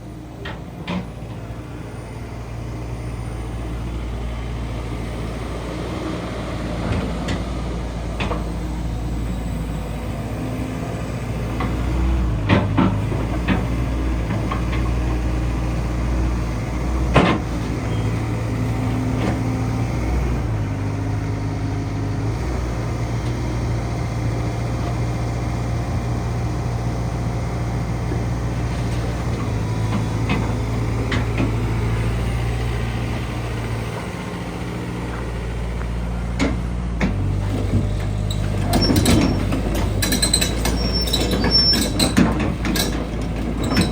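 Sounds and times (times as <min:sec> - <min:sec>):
excavator diesel engine running: 0:00.0 - 0:43.9.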